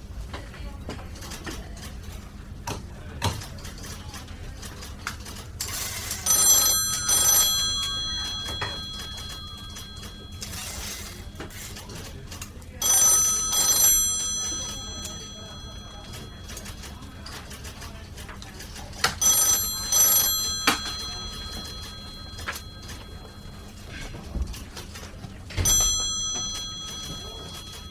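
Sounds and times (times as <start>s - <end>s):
bell double rings: 6.3s - 11.3s, 19.2s - 23.6s, 25.6s - 27.9s.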